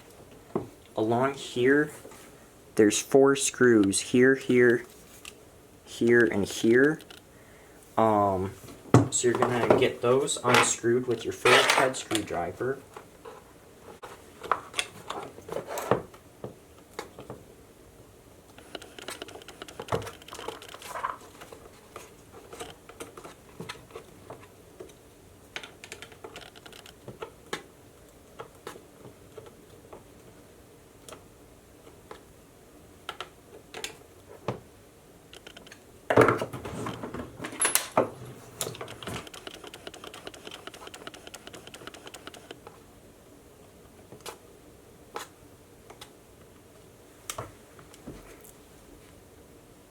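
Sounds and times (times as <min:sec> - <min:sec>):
screwdriver clicking and scraping: 0:38.8 - 0:42.6.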